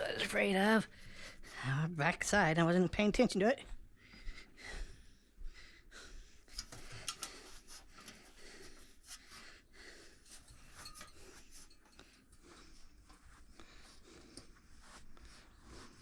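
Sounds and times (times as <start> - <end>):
light clicks and taps: 6.5 - 8.3
hands rustling and scraping parts: 10.2 - 13.5.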